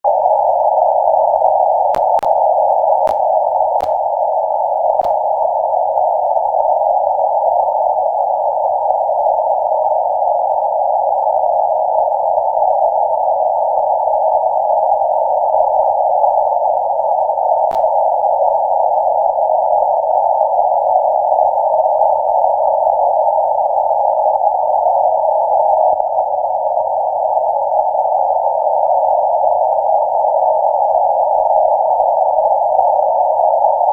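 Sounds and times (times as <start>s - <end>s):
sharp clicks: 2.0s - 2.4s, 3.1s - 4.1s, 5.0s - 5.2s, 17.7s - 18.0s
shortwave radio static hiss: 2.0s - 2.4s, 3.8s - 4.0s, 5.0s - 5.3s, 17.7s - 18.1s.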